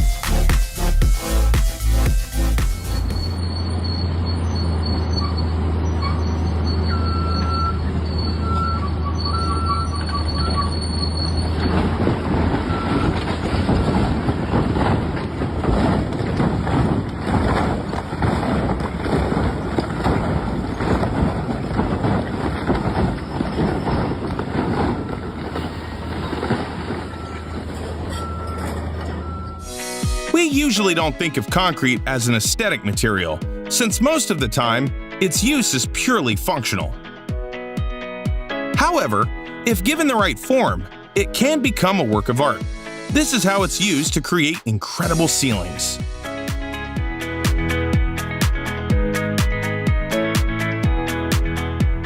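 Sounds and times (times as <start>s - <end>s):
heavy machinery humming: 1.2s - 30.7s
machinery rattling clatter: 5.7s - 29.7s.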